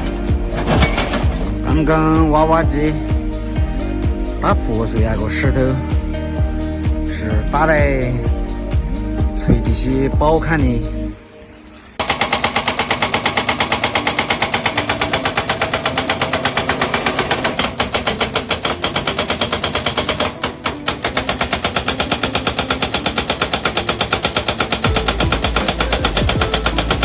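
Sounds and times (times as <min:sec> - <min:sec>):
hydraulic breaker hammering rock: 0:00.0 - 0:02.6, 0:12.0 - 0:27.0.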